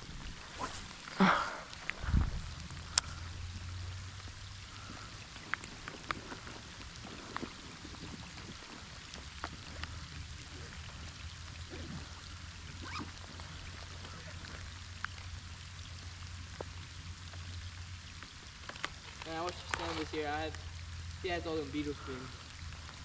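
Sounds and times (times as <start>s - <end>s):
creek water trickling: 0.0s - 23.0s
small ticks and splashes: 0.0s - 23.0s.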